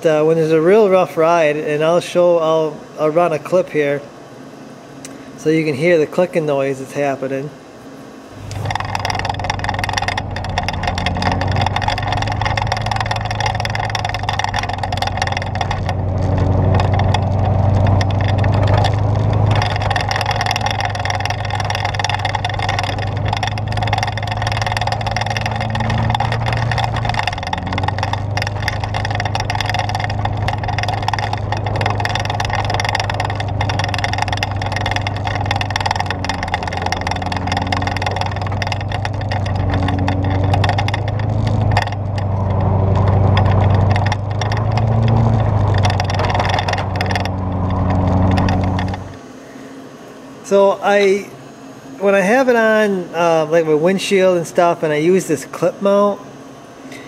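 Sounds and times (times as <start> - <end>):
vehicle engine running: 8.3 - 49.6.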